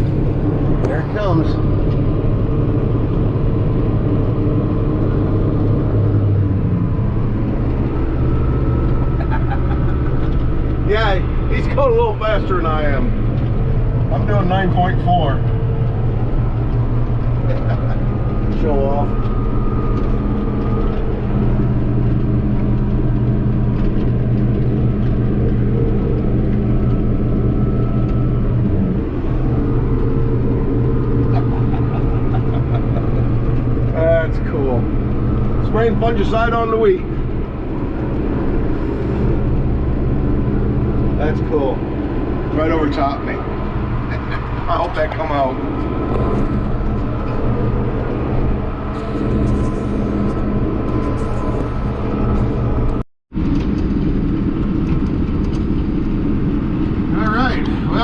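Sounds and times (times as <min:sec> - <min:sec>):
tractor engine droning: 0:00.0 - 0:58.0.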